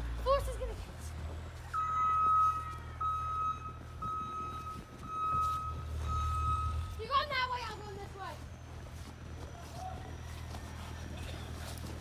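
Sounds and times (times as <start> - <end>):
vehicle warning beeper: 1.7 - 7.0.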